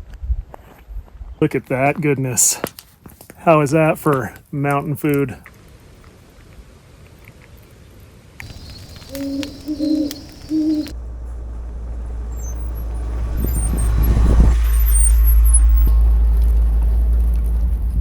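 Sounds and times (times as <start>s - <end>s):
owl hooting: 8.4s - 11.0s
vehicle driving: 8.4s - 18.0s.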